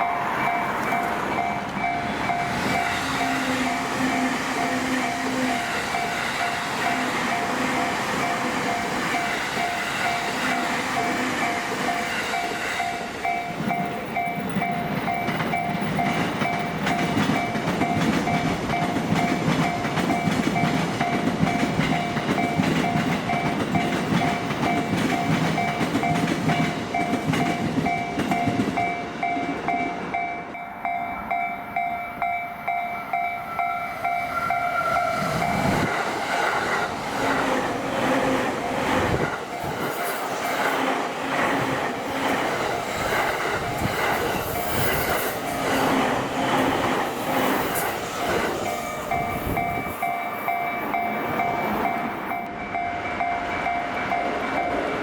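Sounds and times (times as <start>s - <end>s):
level-crossing alarm dinging: 0.0s - 40.9s, 41.8s - 55.0s
electric trains passing: 0.0s - 55.0s.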